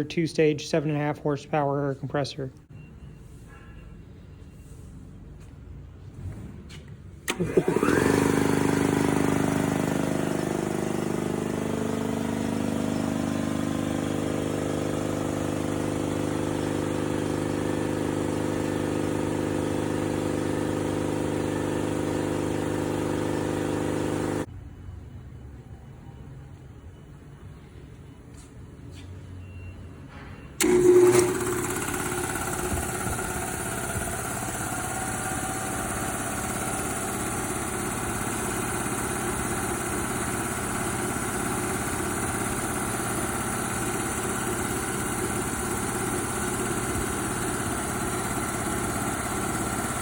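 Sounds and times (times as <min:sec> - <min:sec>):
air compressor running: 0:04.6 - 0:24.5, 0:30.6 - 0:50.0.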